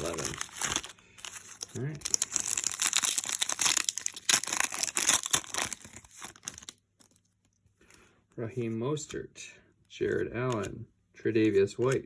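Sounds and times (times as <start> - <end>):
foil wrapper crinkling and tearing: 0.0 - 7.2.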